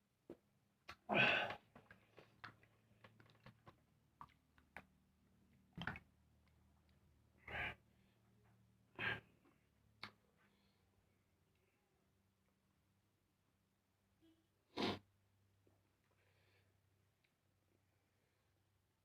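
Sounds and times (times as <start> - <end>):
soft chewing with mouth clicks: 1.8 - 4.9.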